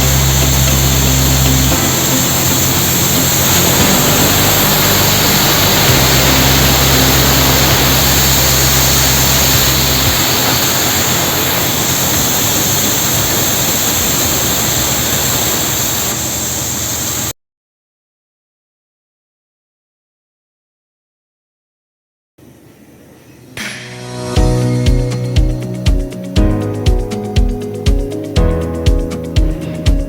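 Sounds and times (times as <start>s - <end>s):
low machine hum: 0.0s - 16.4s
cutting torch hissing: 0.0s - 17.3s.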